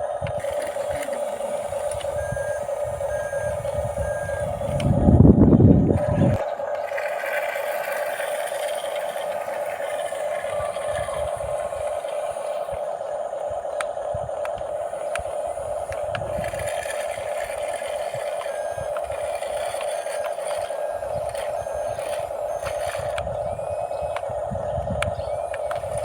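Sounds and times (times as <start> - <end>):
toy motors whining: 0.0 - 26.0
plastic tracks clicking: 0.2 - 5.0, 13.7 - 26.0.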